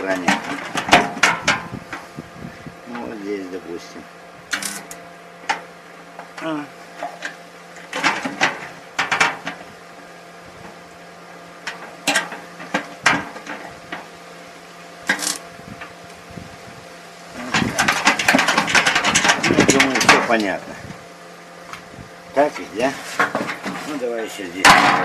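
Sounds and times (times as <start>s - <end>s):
steady low hum: 0.0s - 25.0s
rapid metallic clatter: 17.4s - 20.6s
sharp metallic clicks and knocks: 17.5s - 20.6s.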